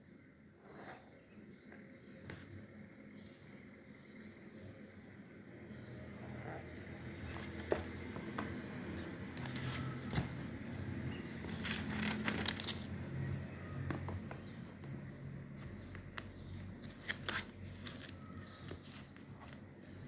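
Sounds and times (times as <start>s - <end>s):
paper rustling: 7.3s - 10.7s, 11.3s - 13.2s, 15.6s - 20.0s.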